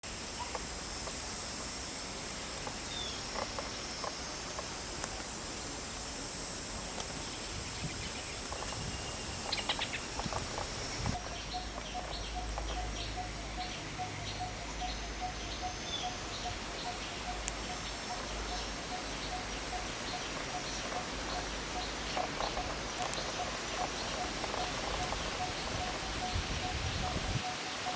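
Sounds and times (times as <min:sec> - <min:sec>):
high insect hiss: 0:00.0 - 0:27.9
bird repeating low note: 0:07.9 - 0:27.9.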